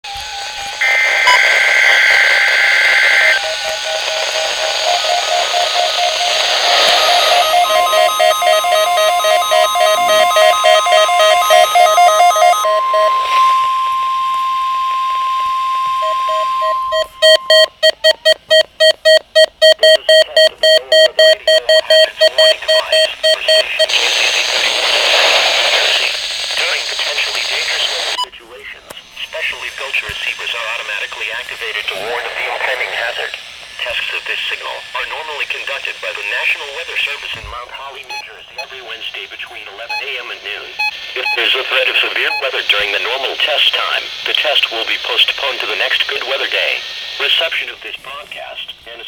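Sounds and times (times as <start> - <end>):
steady warning alarm tone: 0.1 - 24.0
warbling data burst: 0.8 - 17.8
fast electronic beeping: 0.8 - 24.0, 39.9 - 42.8.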